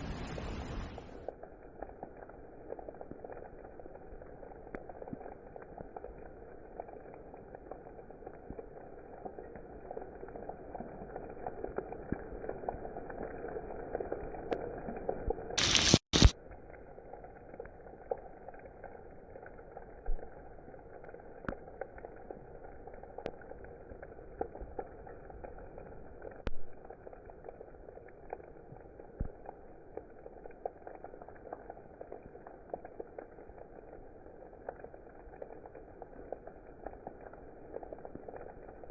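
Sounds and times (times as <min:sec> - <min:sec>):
rain with pattering drops: 0:00.0 - 0:38.9.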